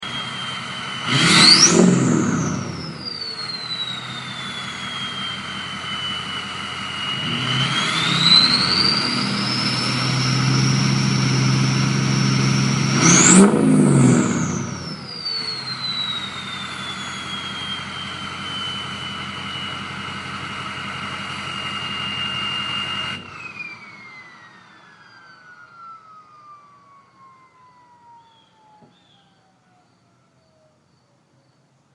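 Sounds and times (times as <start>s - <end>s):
diesel engine revving: 0.0s - 25.0s
turbocharger whistling: 0.0s - 31.0s.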